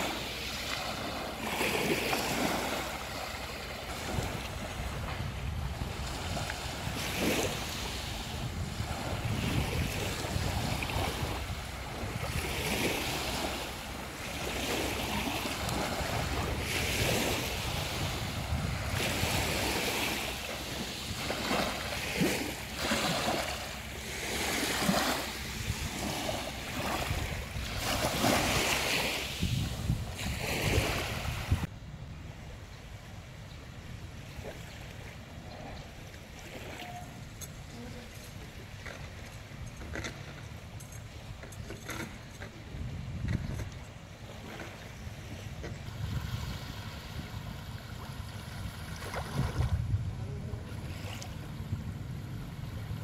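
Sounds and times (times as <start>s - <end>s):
sea waves washing onto beach: 0.0s - 31.7s, 43.8s - 51.7s
wind rumbling on microphone: 0.0s - 53.0s.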